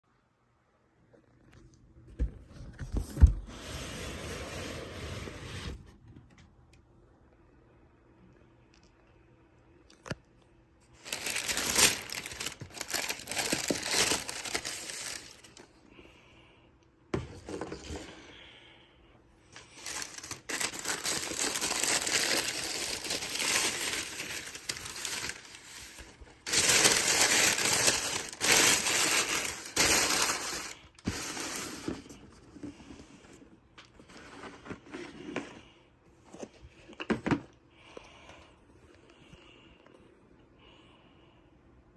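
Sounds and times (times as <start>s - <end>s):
paper rustling and crinkling: 11.0s - 15.7s, 19.6s - 32.8s.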